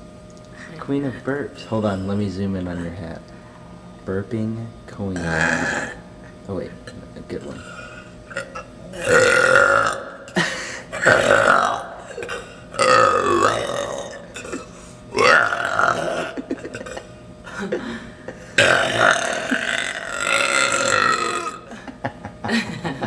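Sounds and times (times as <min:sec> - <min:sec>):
person burping loudly: 0:05.2 - 0:06.0, 0:07.6 - 0:17.1, 0:18.5 - 0:21.7.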